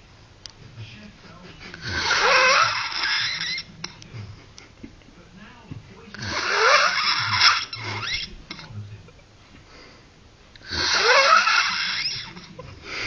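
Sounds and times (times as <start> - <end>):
loud snoring with whistle: 1.8 - 3.6, 6.2 - 8.3, 10.6 - 12.4.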